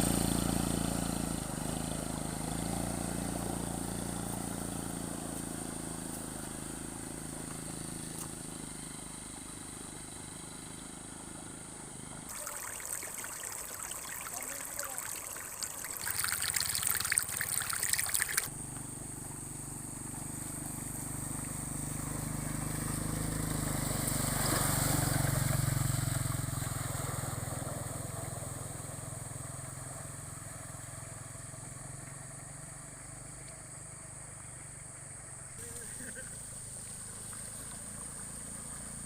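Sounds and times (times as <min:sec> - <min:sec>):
vehicle engine passing: 0:00.0 - 0:33.4, 0:35.2 - 0:39.0
rushing floodwater: 0:12.3 - 0:18.5, 0:22.2 - 0:28.3.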